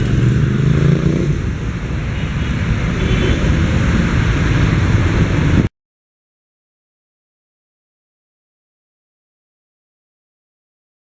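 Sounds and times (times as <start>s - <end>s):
street traffic rumbling: 0.0s - 5.7s.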